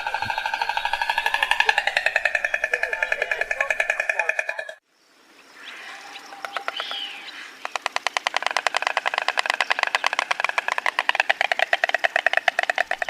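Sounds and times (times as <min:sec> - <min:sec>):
stork clattering bill: 0:00.0 - 0:04.8, 0:07.6 - 0:13.0
soft bird calls: 0:00.0 - 0:13.0.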